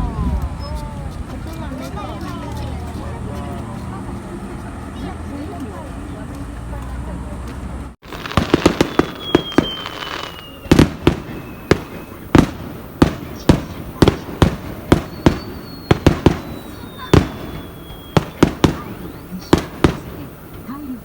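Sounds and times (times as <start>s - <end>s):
firework bangs: 8.0s - 21.0s
high whistles sliding downward: 8.1s - 12.4s, 15.0s - 19.3s.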